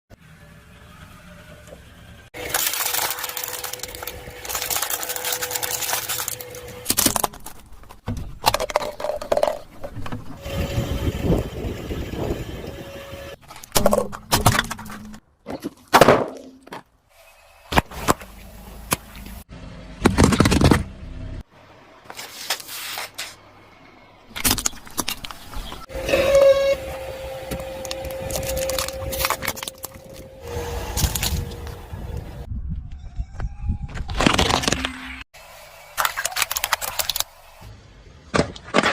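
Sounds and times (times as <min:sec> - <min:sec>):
objects crushed under car tyre: 0:02.4 - 0:07.7.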